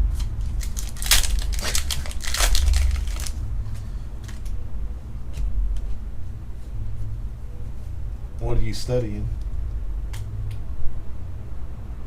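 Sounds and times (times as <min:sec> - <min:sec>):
low hum: 0:00.0 - 0:12.0
cards and wrapper clicks: 0:00.2 - 0:03.4, 0:04.2 - 0:04.6
foil pack crinkling and tearing: 0:00.2 - 0:03.4, 0:04.2 - 0:04.5.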